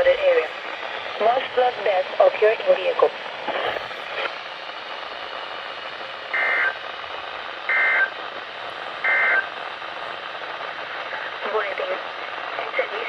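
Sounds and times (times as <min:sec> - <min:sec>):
radio hiss: 0:00.0 - 0:13.0.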